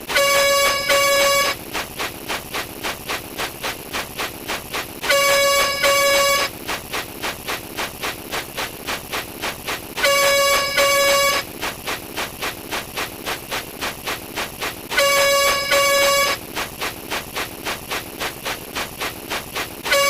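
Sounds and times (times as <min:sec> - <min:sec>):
horn honks: 0:00.1 - 0:01.6, 0:05.1 - 0:06.5, 0:10.0 - 0:11.4, 0:14.9 - 0:16.4.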